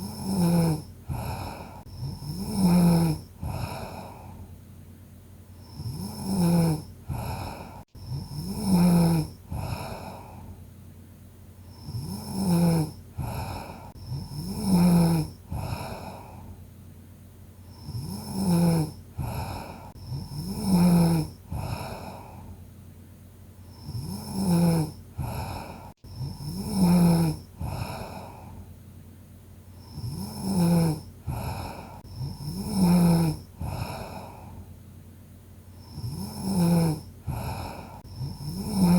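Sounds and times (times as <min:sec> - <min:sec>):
person snoring: 0:00.0 - 0:04.5, 0:05.6 - 0:10.6, 0:11.6 - 0:16.6, 0:17.6 - 0:22.6, 0:23.6 - 0:28.7, 0:29.7 - 0:34.7, 0:35.7 - 0:38.9.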